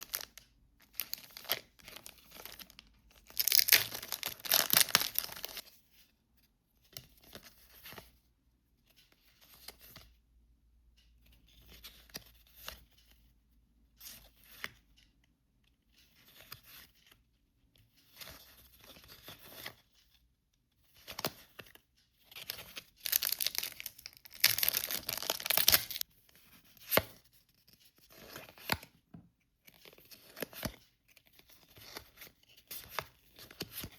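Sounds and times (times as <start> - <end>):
wrappers tearing and crinkling: 3.3 - 5.5, 23.0 - 26.0.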